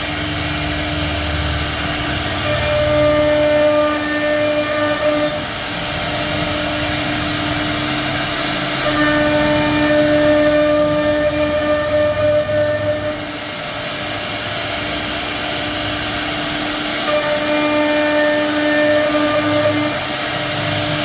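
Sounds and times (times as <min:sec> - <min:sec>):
router spindle whine: 0:00.0 - 0:21.0
hiss of cutting wood: 0:16.8 - 0:21.0.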